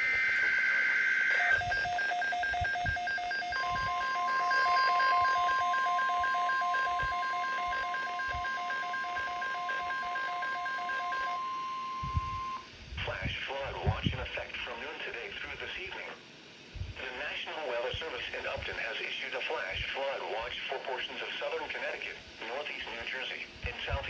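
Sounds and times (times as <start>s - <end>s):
long steady alert tone: 0.0s - 12.7s
rapid two-pitch beeps: 0.0s - 12.7s
warbling two-tone data burst: 0.0s - 12.7s.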